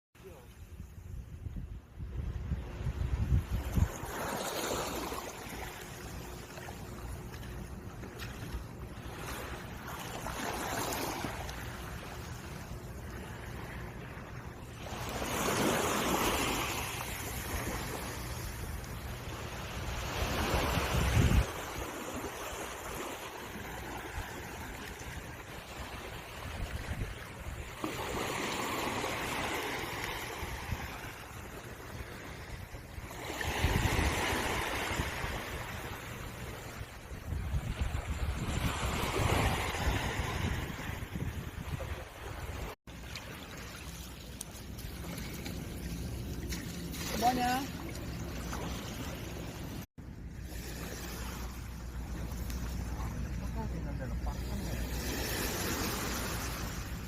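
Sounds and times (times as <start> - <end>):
wind rumble on microphone: 0.5 - 4.6, 17.0 - 27.9, 30.3 - 42.8
sea waves breaking on beach: 2.2 - 57.0.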